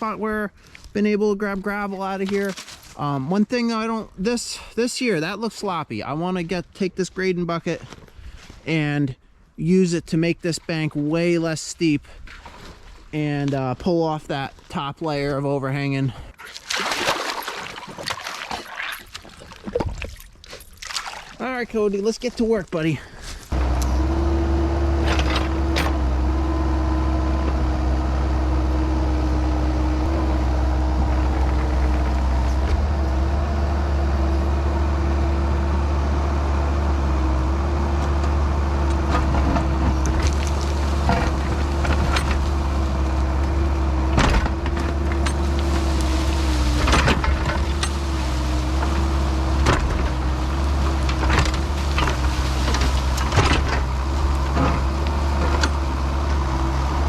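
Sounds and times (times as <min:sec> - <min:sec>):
excavator diesel engine running: 0:23.5 - 0:57.0
steady mechanical whine: 0:23.5 - 0:57.0
bucket scraping dirt and gravel: 0:39.2 - 0:43.3, 0:44.0 - 0:55.9.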